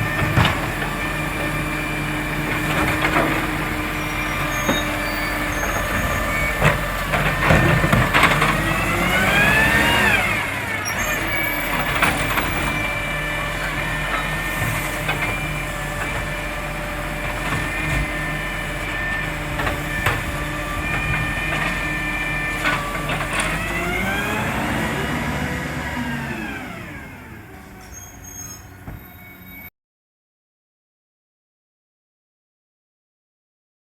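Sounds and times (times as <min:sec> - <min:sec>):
knocks and clunks: 0:00.0 - 0:01.6, 0:04.4 - 0:09.1
truck engine revving: 0:00.0 - 0:29.0.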